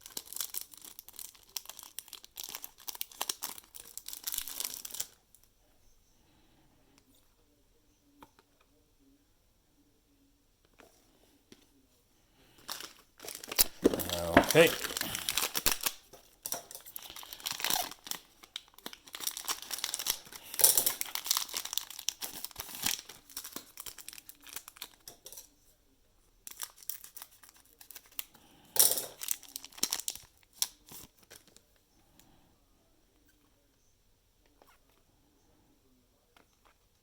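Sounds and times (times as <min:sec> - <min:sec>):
plastic wrappers crinkling and tearing: 0:00.0 - 0:05.2, 0:12.6 - 0:25.4, 0:26.4 - 0:31.6.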